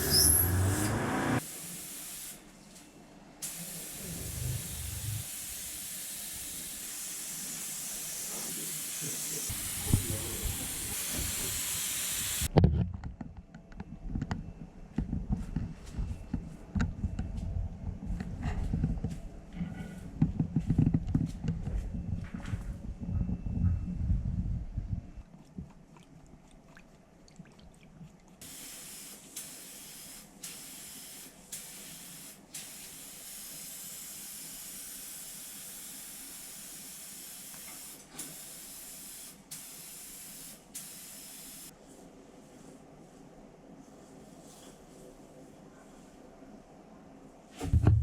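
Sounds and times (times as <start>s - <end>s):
spray paint hissing: 3.4s - 12.5s.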